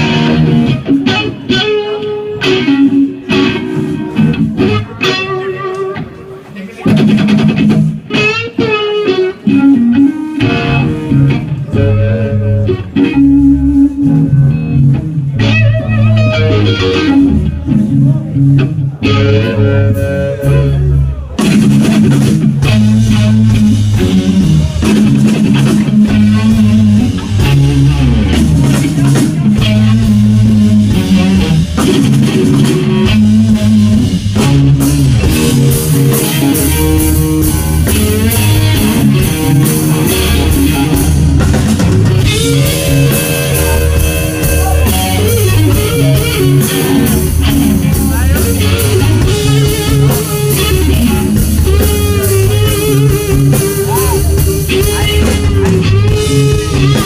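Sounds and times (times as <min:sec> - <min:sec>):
bass line: 0:00.0 - 0:57.0
electric guitar playing rock: 0:00.0 - 0:57.0.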